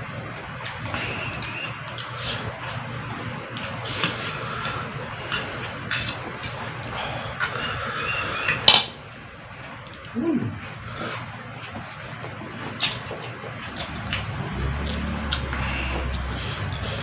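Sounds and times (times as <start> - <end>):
chewing food: 9.6 - 17.0.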